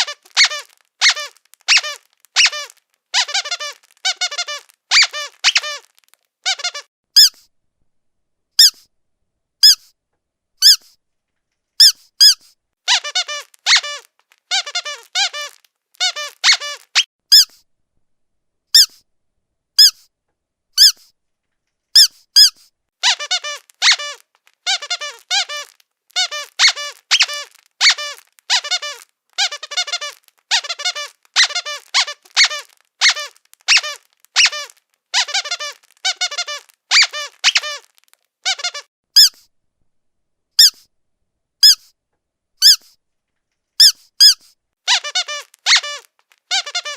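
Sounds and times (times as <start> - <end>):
squeaky dog toy squeaking: 0.0 - 7.5, 8.6 - 8.9, 9.6 - 9.9, 10.6 - 11.0, 11.8 - 17.6, 18.7 - 19.0, 19.8 - 20.1, 20.8 - 21.1, 21.9 - 39.5, 40.6 - 40.9, 41.6 - 42.0, 42.6 - 43.0, 43.8 - 46.9.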